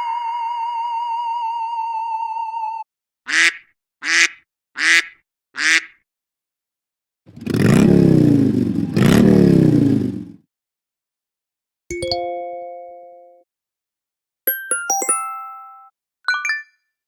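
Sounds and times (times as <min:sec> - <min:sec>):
phone ringtone: 0:14.5 - 0:16.9.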